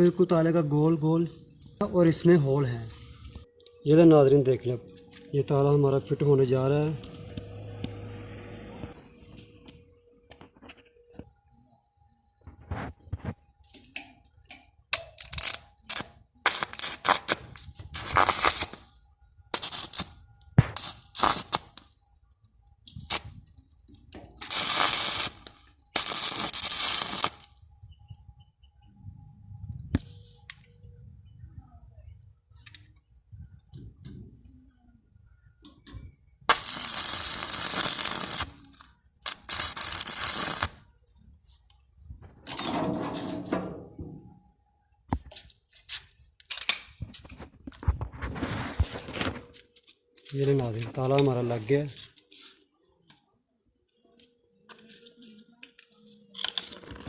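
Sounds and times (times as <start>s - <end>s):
harsh hissing metalworking noise: 24.2s - 27.7s, 36.5s - 40.9s
metal scraping and knocking: 42.4s - 44.4s.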